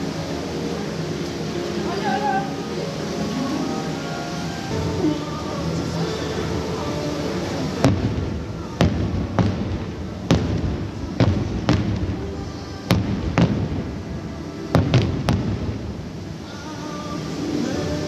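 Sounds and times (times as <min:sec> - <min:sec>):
music playing: 0:00.0 - 0:18.0
fireworks bangs: 0:06.8 - 0:16.7.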